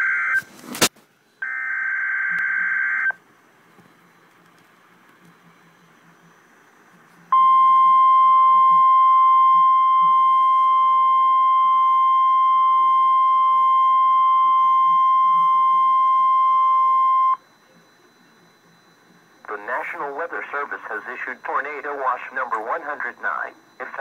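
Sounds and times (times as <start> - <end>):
loud steady alarm beep: 7.3 - 24.0
faint radio static: 14.9 - 24.0.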